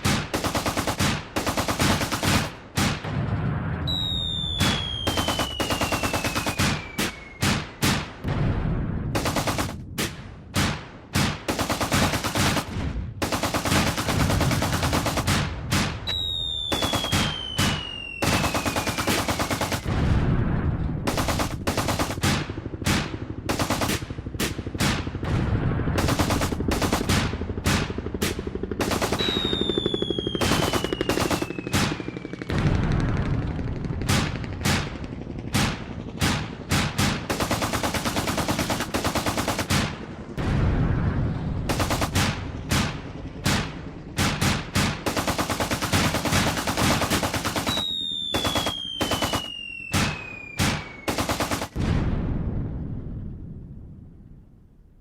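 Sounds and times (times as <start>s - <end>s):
machine-gun fire bursts: 0.0s - 8.5s, 9.2s - 20.2s, 21.0s - 40.5s, 41.7s - 51.9s
single gunshots: 0.0s - 32.2s, 34.1s - 40.6s, 41.7s - 52.4s
high falling whistle: 3.9s - 7.5s, 16.1s - 18.4s, 47.7s - 51.1s.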